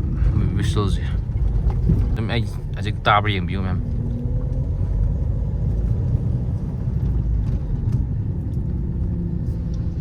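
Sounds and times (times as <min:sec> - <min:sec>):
diesel engine low rumble: 0:00.0 - 0:10.0.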